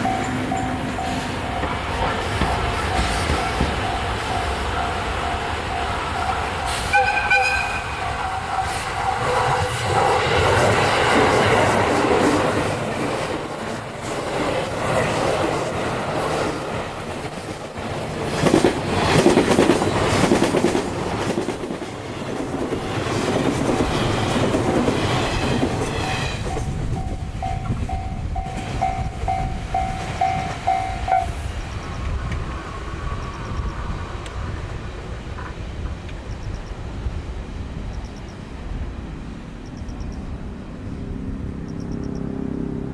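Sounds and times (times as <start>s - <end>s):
crossing warning bell ringing: 0.0s - 9.9s, 25.2s - 31.5s
train wheels clattering: 0.0s - 31.4s.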